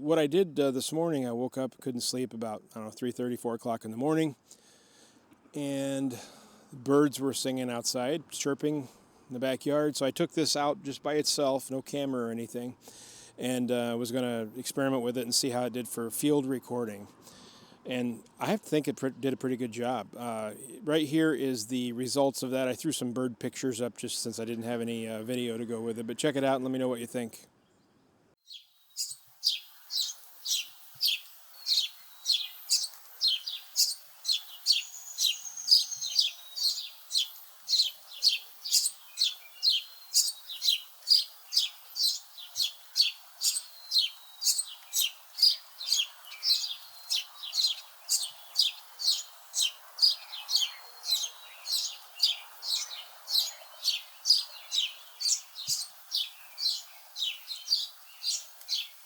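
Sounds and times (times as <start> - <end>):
faint background noise: 0.0 - 59.0
bird chirping: 27.5 - 59.0
faint bird whistle: 28.5 - 34.0.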